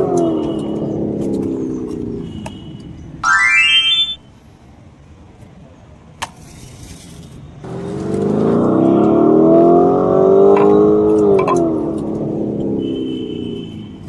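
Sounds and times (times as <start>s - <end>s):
car engine revving: 7.7s - 12.9s.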